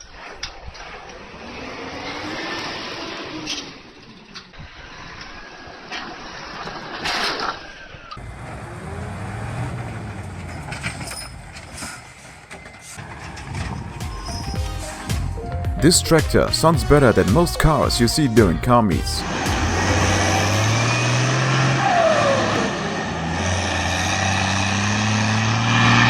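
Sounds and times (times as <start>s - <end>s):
machinery whining: 8.2s - 26.0s
large engine running: 18.9s - 26.0s.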